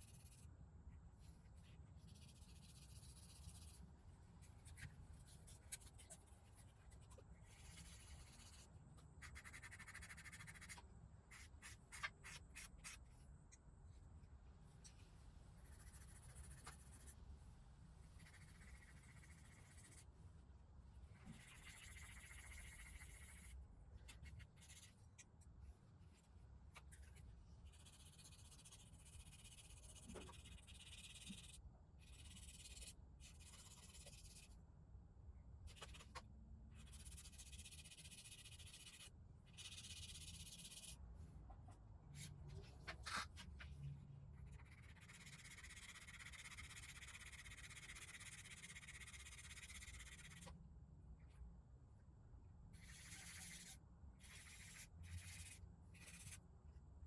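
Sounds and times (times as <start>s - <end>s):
faint low hum: 0.0s - 57.0s.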